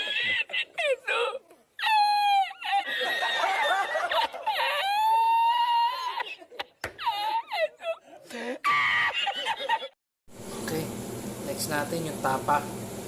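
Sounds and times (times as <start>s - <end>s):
high voice laughing and squealing: 0.0s - 10.0s.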